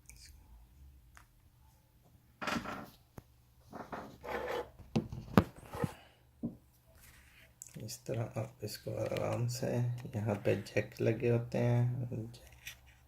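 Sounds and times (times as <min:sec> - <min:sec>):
phone screen scraping: 0:03.7 - 0:06.0.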